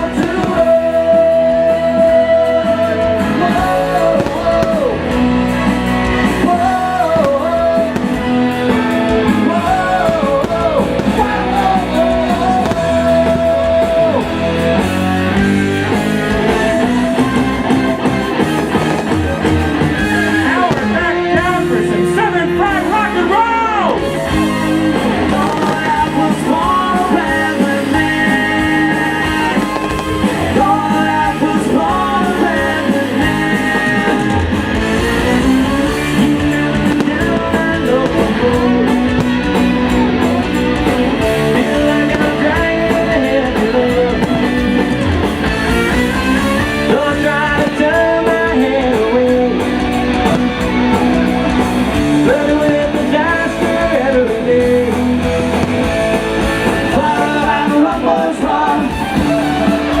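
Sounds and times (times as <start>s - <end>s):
electric guitar: 0.0s - 60.0s
live rock band playing: 0.0s - 60.0s.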